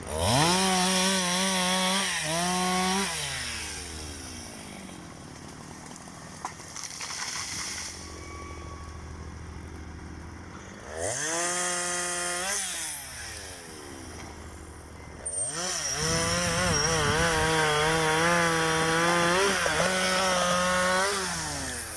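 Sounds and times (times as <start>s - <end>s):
chainsaw revving: 0.0s - 4.7s, 10.7s - 14.1s, 15.2s - 21.9s.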